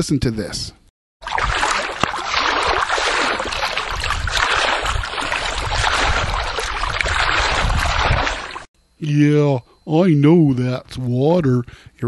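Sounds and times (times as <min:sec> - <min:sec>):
water sloshing and splashing: 0:01.2 - 0:08.7.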